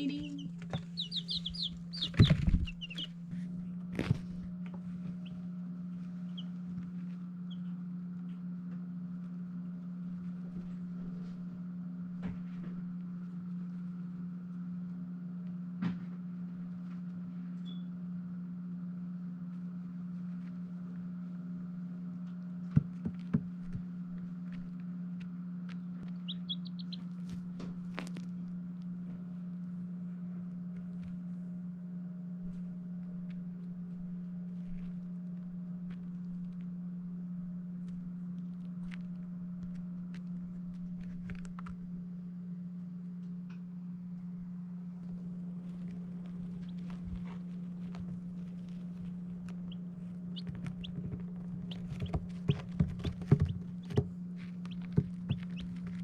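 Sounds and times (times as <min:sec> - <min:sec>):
baby chicks peeping: 0:00.0 - 0:03.4, 0:04.8 - 0:07.8, 0:25.7 - 0:28.1, 0:45.6 - 0:56.0
steady low hum: 0:00.0 - 0:56.0.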